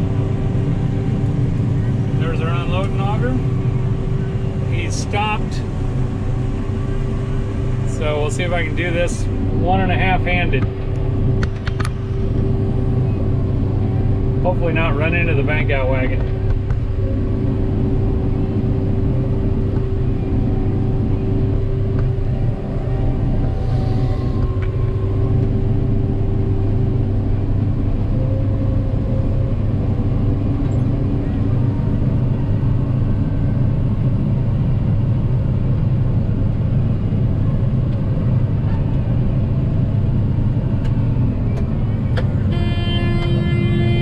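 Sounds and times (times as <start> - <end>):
combine harvester drone: 0.0 - 44.0
steady auger hum: 42.2 - 44.0.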